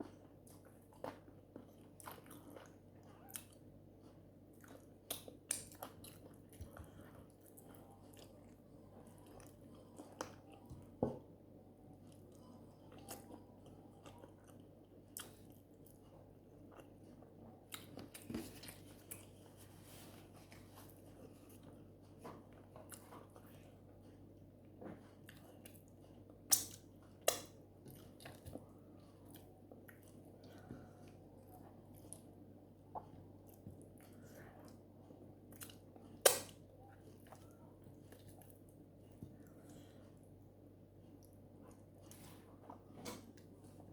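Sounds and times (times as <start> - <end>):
low steady hum: 0.0 - 43.9.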